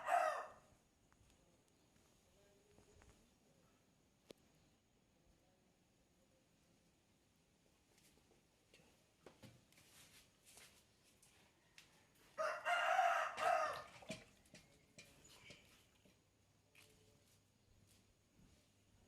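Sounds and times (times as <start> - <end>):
rooster crowing: 0.0 - 0.6, 11.8 - 14.1.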